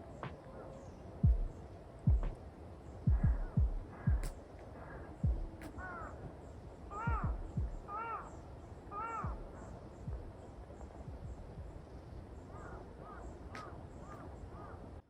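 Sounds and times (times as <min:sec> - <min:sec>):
crows cawing: 0:03.0 - 0:10.4, 0:12.4 - 0:15.0.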